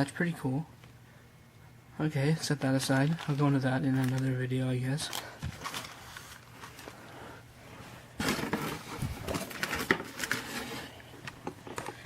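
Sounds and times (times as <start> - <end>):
rustling handling noise: 2.4 - 12.0.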